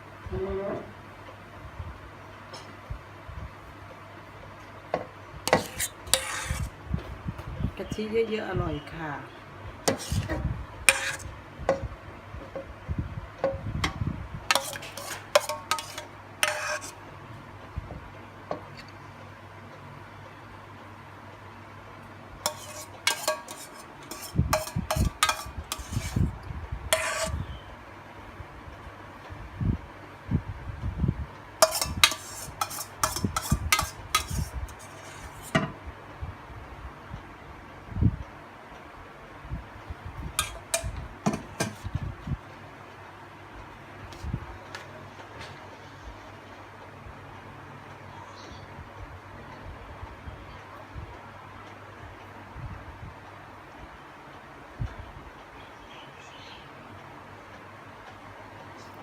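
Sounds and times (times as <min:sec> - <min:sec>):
utensil clinking against metal pot: 0:05.5 - 0:06.6, 0:10.9 - 0:11.3, 0:14.5 - 0:17.0, 0:22.5 - 0:26.2, 0:26.9 - 0:27.4, 0:31.6 - 0:35.7, 0:40.4 - 0:41.8.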